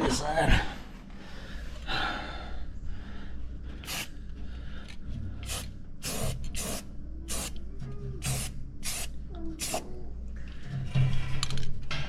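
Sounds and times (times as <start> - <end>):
steady low hum: 0.0 - 12.0
welder hissing crackling bursts: 3.8 - 4.1, 5.4 - 7.5.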